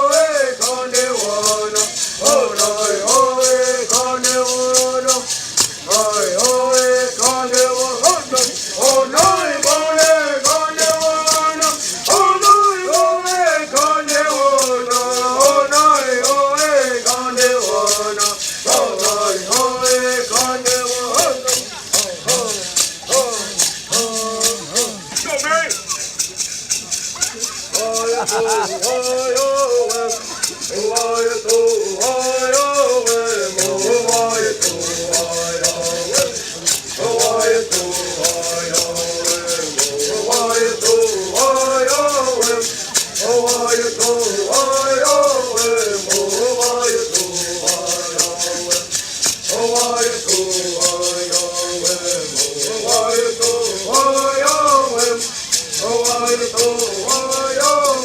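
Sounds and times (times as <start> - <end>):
voices chanting in unison: 0.0 - 25.2, 27.8 - 58.0
shaken gourd rattles: 0.0 - 58.0.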